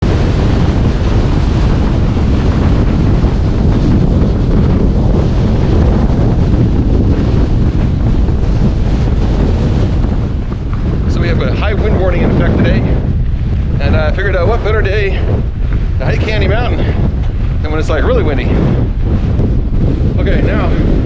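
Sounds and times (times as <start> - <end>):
gusty wind buffeting microphone: 0.0 - 21.0.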